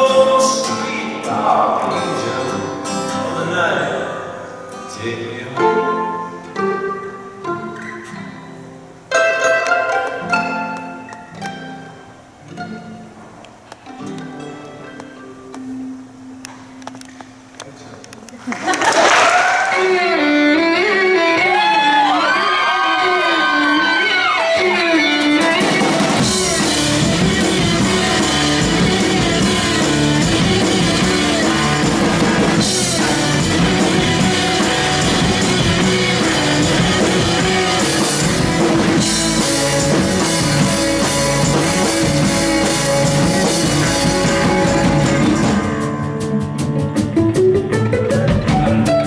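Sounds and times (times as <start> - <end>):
live rock band playing: 0.0 - 3.4, 19.8 - 49.0
violin line: 5.3 - 13.2, 23.0 - 46.5.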